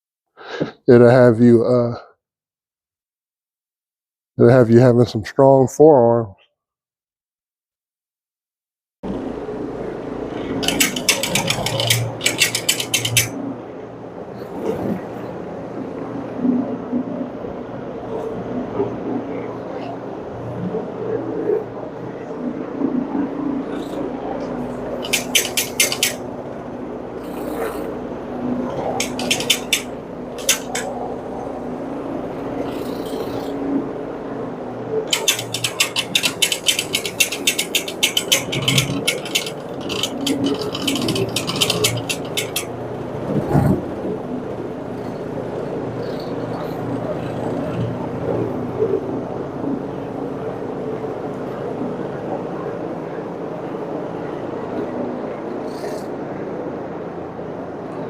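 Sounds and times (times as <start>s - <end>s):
rapid even clattering: 10.4s - 13.4s, 24.9s - 26.3s, 28.6s - 31.1s, 35.1s - 42.9s.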